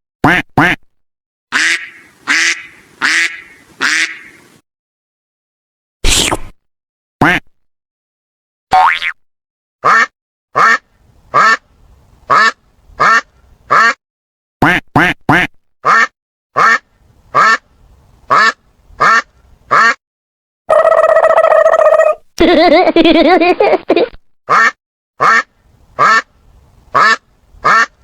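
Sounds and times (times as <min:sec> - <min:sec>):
duck quacking: 0:00.2 - 0:00.8, 0:01.5 - 0:04.6, 0:07.2 - 0:07.4, 0:09.8 - 0:11.6, 0:12.3 - 0:14.0, 0:14.6 - 0:16.8, 0:17.4 - 0:17.6, 0:18.3 - 0:20.0, 0:24.5 - 0:26.3, 0:26.9 - 0:28.0.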